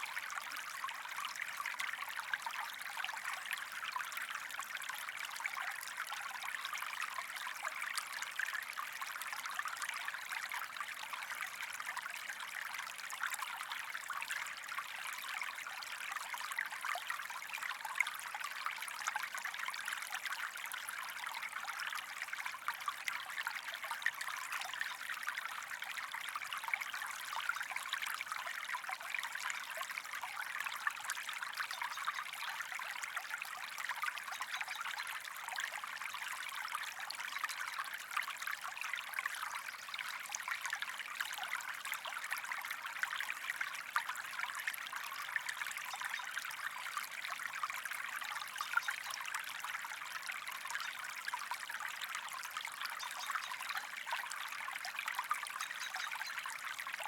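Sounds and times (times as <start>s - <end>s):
creek water over rocks: 0.0s - 57.0s.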